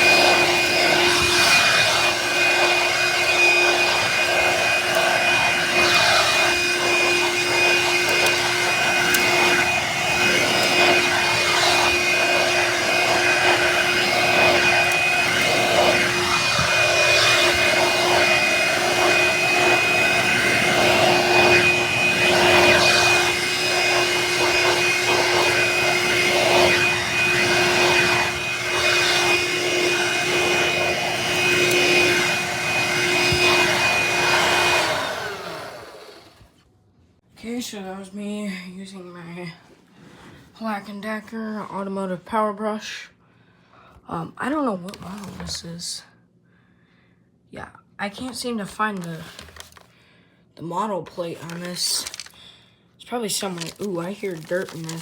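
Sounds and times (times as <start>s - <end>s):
handheld vacuum whining: 0.0s - 36.7s, 53.4s - 55.0s.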